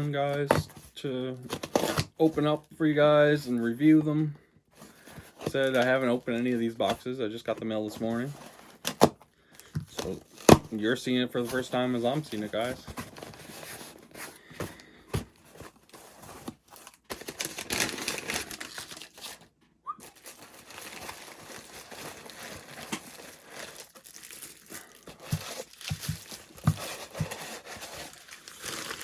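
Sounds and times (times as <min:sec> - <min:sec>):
packaging tearing and crinkling: 0:15.5 - 0:29.0.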